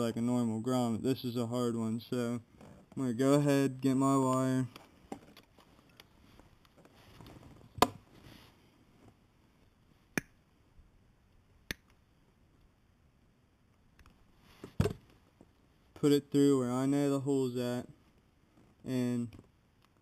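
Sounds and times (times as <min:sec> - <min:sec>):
faint rustling: 0:04.3 - 0:10.1.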